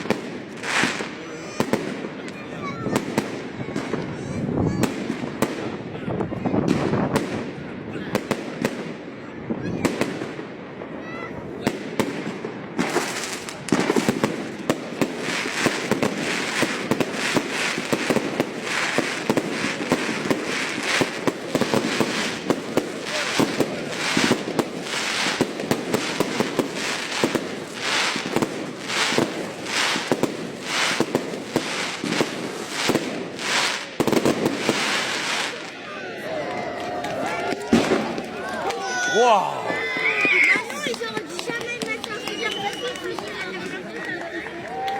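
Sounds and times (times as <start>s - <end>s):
fireworks crackling: 0.0s - 44.9s
fireworks shells bursting: 12.8s - 35.6s.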